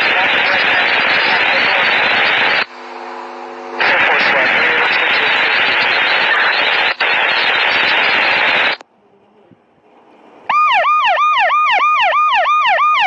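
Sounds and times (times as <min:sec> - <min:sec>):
radio static hiss: 0:00.0 - 0:08.8
yelp siren: 0:10.5 - 0:13.0.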